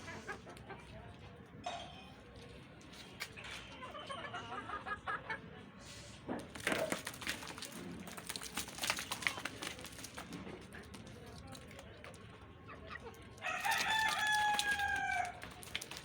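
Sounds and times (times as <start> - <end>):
chickens clucking: 0.0 - 1.4, 6.5 - 16.0
scratchy rustles: 6.5 - 12.2.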